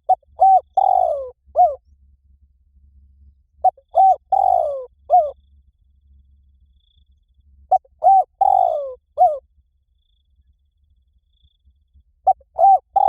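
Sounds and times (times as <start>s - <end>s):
dove cooing: 0.0s - 1.8s, 3.6s - 5.4s, 7.7s - 9.4s, 12.2s - 13.0s.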